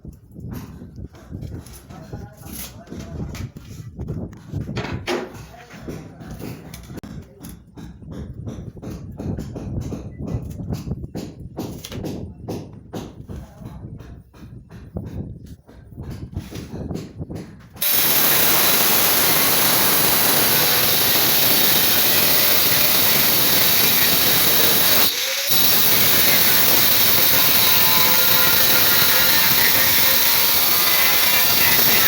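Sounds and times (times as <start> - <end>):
handheld power tool running: 17.8 - 32.0.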